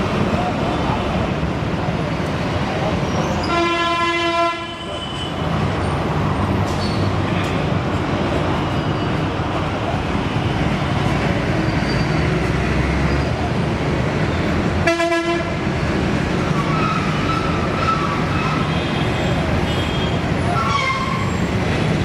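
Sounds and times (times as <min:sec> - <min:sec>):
traffic rumble: 0:00.0 - 0:22.0
vehicle horn: 0:03.5 - 0:05.3, 0:14.8 - 0:15.5.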